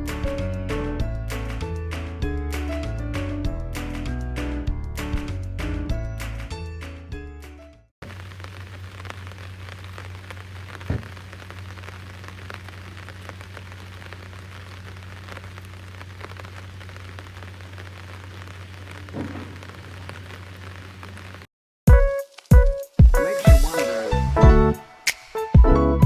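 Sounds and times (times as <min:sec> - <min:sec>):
even hiss: 0:08.0 - 0:21.5, 0:23.2 - 0:25.4.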